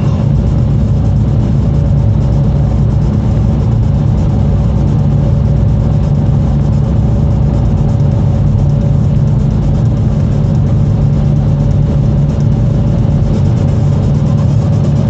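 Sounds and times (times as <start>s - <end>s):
road noise: 0.0s - 0.8s
car engine drone: 0.0s - 14.6s.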